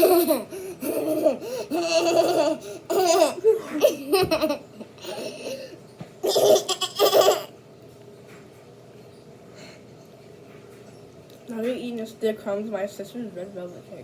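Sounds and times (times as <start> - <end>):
young children laughing: 0.0 - 7.5.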